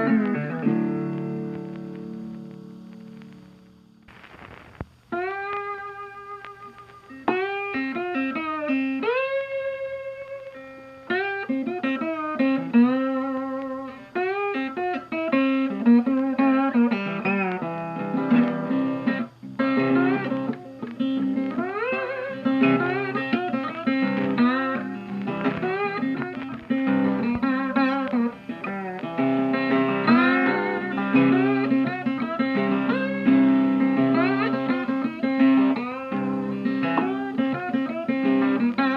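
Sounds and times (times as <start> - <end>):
bluesy guitar with sliding notes: 0.0 - 38.9.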